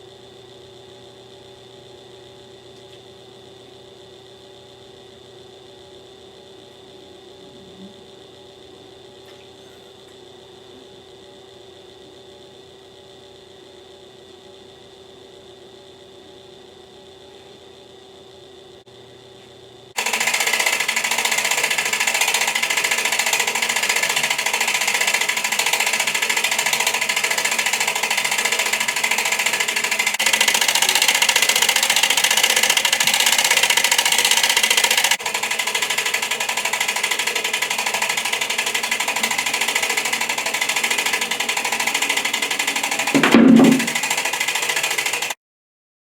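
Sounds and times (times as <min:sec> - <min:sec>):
mechanical whirring: 0:20.0 - 0:45.4.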